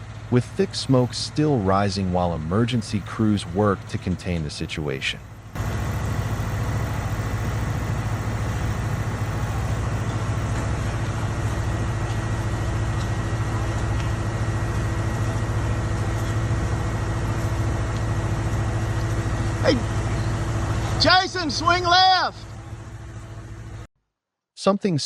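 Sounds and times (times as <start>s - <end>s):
large engine droning: 0.0s - 23.9s.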